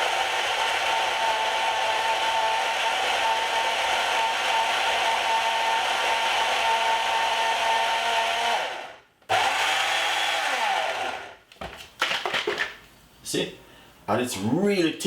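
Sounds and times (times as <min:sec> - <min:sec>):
blender motor whining: 0:00.0 - 0:11.4.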